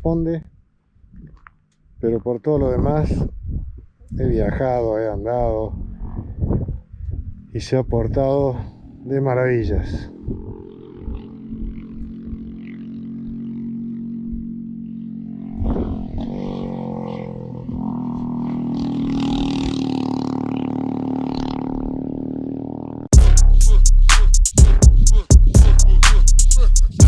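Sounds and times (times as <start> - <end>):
motorcycle engine running: 8.3 - 9.2, 10.1 - 27.0
loud music: 23.1 - 27.0.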